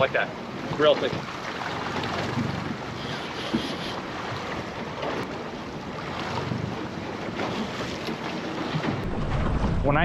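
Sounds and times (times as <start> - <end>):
sea water washing around boat: 0.0 - 10.0
wind buffeting microphone: 4.1 - 10.0.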